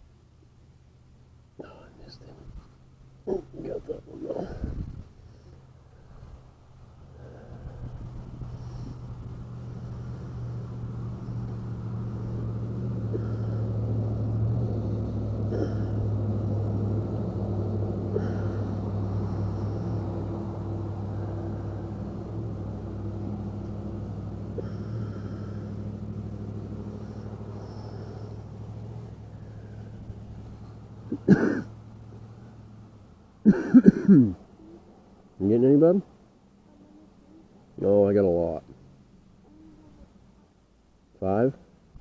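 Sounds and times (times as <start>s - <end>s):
motor engine humming: 2.5s - 35.0s.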